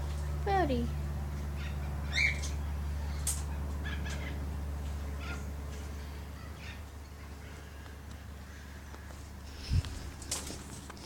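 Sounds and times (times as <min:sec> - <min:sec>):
steady low hum: 0:00.0 - 0:11.0
small birds chirping: 0:01.6 - 0:04.4.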